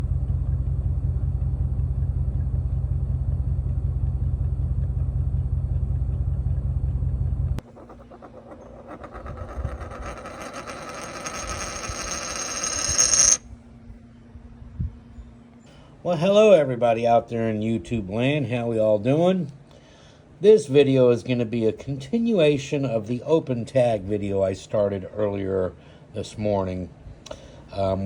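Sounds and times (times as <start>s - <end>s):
deep engine rumble: 0.0s - 7.8s
rising engine-like whine: 0.0s - 10.2s.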